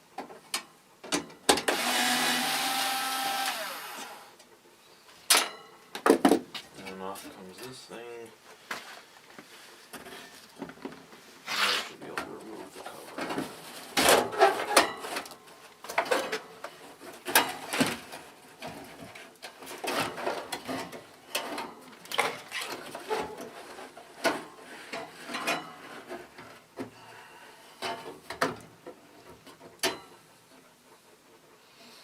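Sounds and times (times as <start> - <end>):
clunks and knocks of metal cover: 1.0 - 1.7, 5.3 - 6.6, 27.8 - 30.1.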